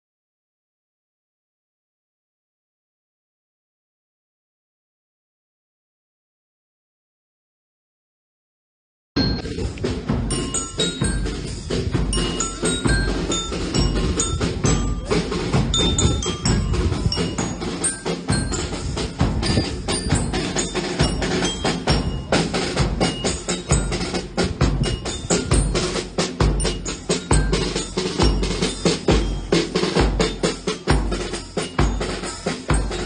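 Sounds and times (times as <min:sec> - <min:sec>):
mallet percussion notes: 0:09.2 - 0:33.0
thumping low drum beat: 0:09.2 - 0:33.0.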